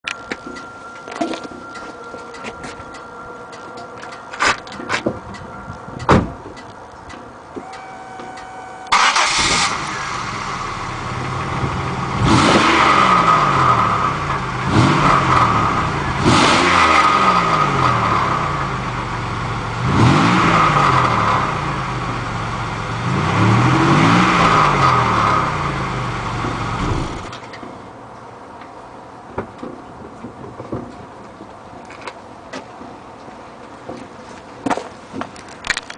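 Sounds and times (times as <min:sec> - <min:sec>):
leaking exhaust: 0:07.6 - 0:27.6
car engine starting and revving: 0:08.9 - 0:27.4.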